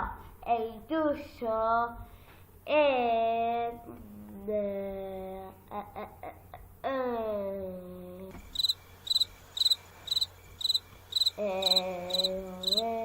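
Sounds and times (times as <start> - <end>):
high chirp repeating: 8.6 - 12.9.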